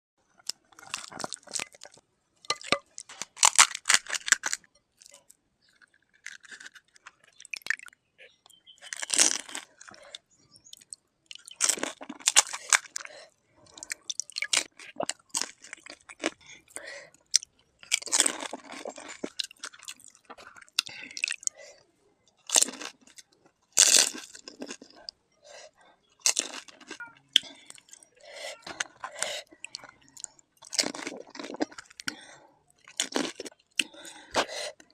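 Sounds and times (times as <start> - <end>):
crunchy food being chewed: 0.3 - 34.9.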